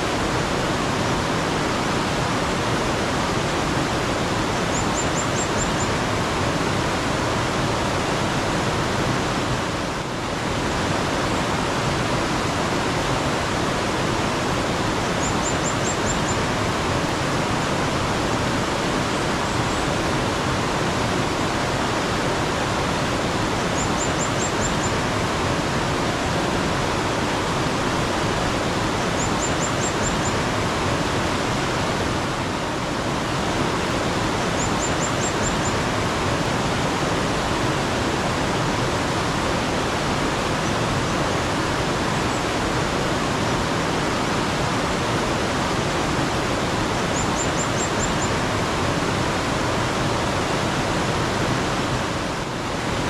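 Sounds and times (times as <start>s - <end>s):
running water rushing: 0.0s - 53.0s
bird chirping: 4.7s - 6.0s, 15.1s - 16.4s, 23.7s - 25.0s, 29.0s - 30.4s, 34.4s - 35.8s, 47.1s - 48.3s.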